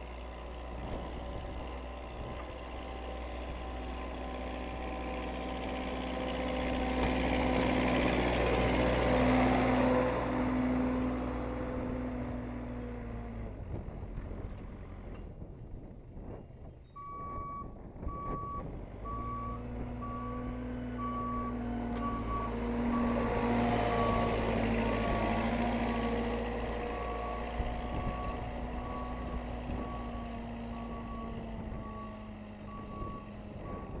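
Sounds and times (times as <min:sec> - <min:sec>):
backhoe engine running: 0:00.0 - 0:34.0.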